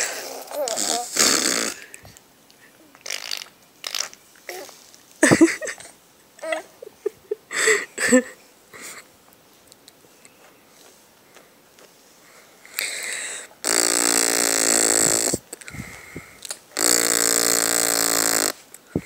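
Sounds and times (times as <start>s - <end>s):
raspberries blown with lips: 0.0s - 2.2s, 3.0s - 5.5s, 12.7s - 19.0s.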